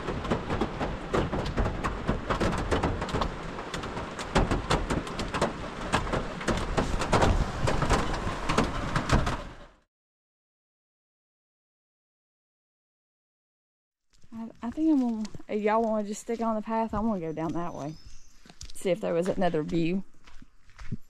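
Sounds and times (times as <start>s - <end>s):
rain pattering on a car roof: 0.0s - 9.6s.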